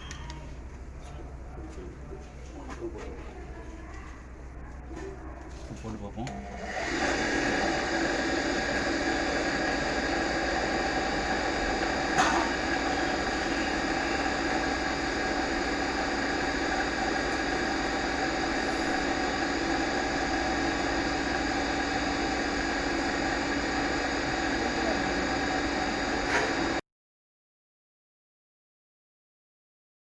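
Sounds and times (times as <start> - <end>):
electric water pump motor running: 5.8 - 26.8.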